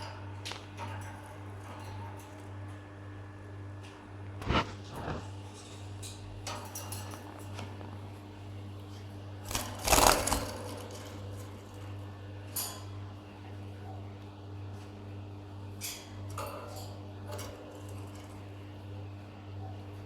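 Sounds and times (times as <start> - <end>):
steady low hum: 0.0 - 20.0
birds feeding clicks and clinks: 8.9 - 14.2, 15.7 - 20.0
loud clatter: 9.5 - 11.5.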